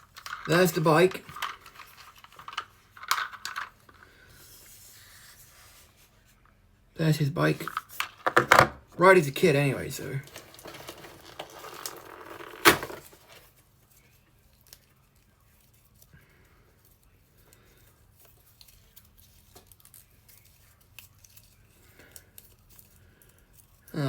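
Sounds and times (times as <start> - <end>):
plastic and cardboard rustling: 0.0 - 6.4, 10.0 - 23.9.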